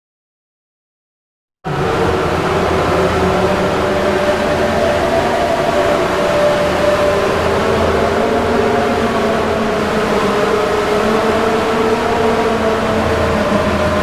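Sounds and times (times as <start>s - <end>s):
alarm drone of held tones: 1.7s - 14.0s.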